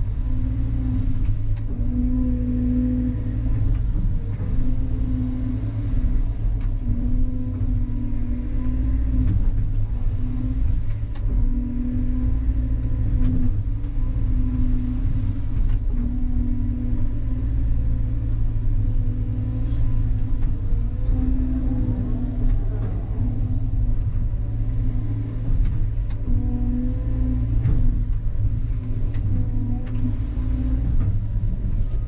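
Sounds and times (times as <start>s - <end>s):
excavator diesel engine running: 0.0s - 32.0s
hydraulic hum: 0.0s - 32.0s.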